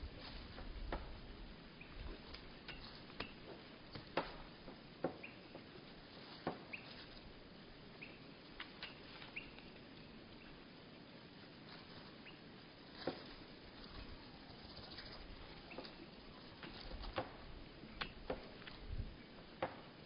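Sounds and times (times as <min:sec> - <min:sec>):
faint hiss: 0:00.0 - 0:20.0
bird chirp calls: 0:05.1 - 0:05.6, 0:08.8 - 0:09.8.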